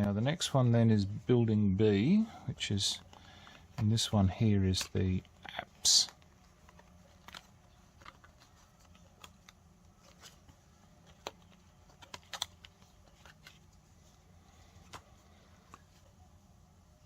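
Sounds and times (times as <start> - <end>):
cardboard game pieces clicking: 11.0 - 13.6.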